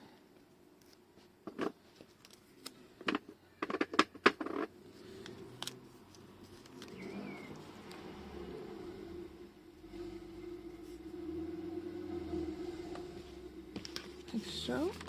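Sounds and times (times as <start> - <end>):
hands handling paper and supplies: 0.8 - 3.2, 4.4 - 8.0.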